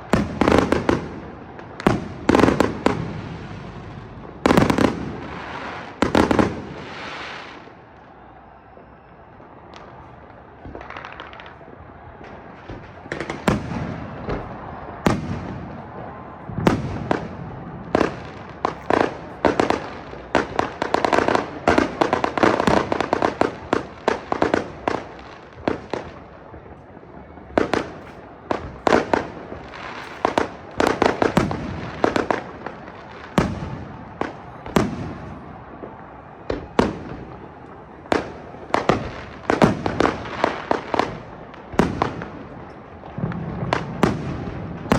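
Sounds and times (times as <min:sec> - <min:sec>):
fireworks bangs and pops: 0:00.0 - 0:44.9
fireworks crackle: 0:00.0 - 0:44.9.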